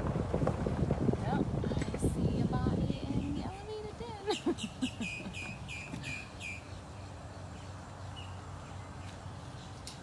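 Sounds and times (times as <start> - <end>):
low outdoor hum: 0.0 - 10.0
bird chirping: 4.3 - 10.0.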